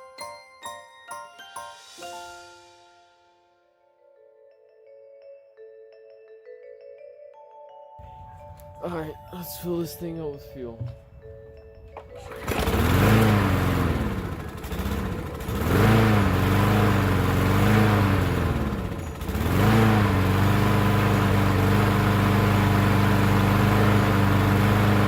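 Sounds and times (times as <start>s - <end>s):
lawn mower engine surging: 12.1s - 25.0s.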